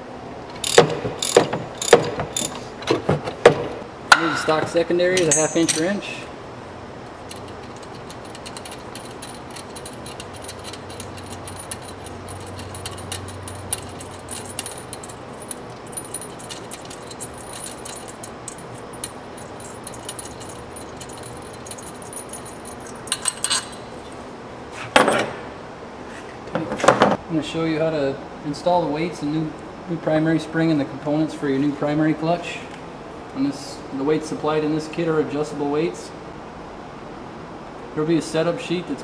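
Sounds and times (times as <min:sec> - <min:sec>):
metallic clinks of hand tools: 0:05.2 - 0:06.1, 0:07.3 - 0:23.8.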